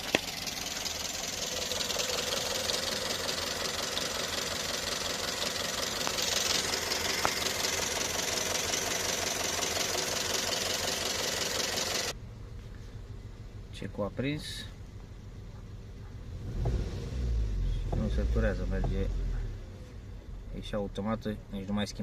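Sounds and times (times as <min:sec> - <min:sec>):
car engine idling roughly: 0:00.0 - 0:12.2.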